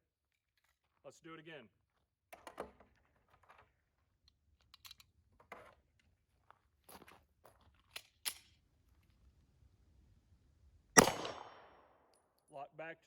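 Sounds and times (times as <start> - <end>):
gun handling clicks and clacks: 2.3 - 6.2, 7.0 - 9.2.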